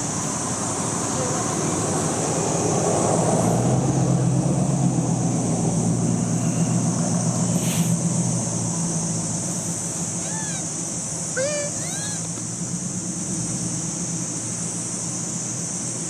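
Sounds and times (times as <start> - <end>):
engine humming: 0.0 - 16.0
high-pitched hiss: 5.8 - 16.0.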